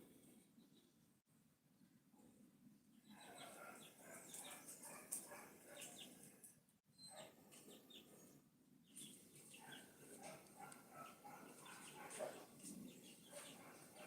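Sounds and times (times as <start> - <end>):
bird calls and chirps: 2.9 - 14.0.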